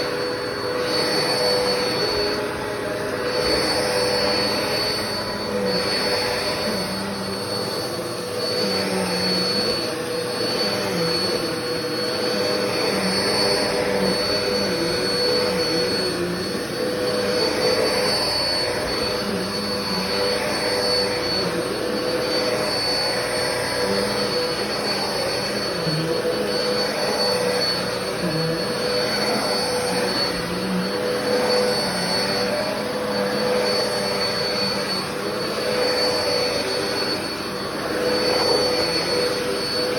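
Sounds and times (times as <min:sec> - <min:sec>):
vacuum cleaner running: 0:00.0 - 0:39.9.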